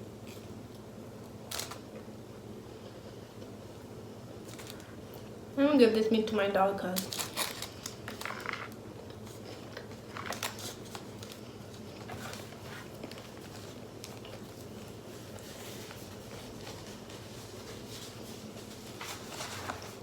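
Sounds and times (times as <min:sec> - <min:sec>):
low room hum: 0:00.0 - 0:20.0
food packaging clicks and rustles: 0:00.2 - 0:02.1, 0:04.4 - 0:05.4, 0:06.9 - 0:20.0.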